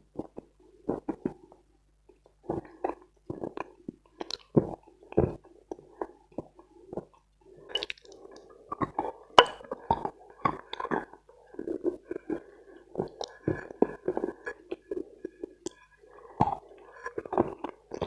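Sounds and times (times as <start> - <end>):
chewing crunches: 2.6 - 5.2, 7.8 - 12.4.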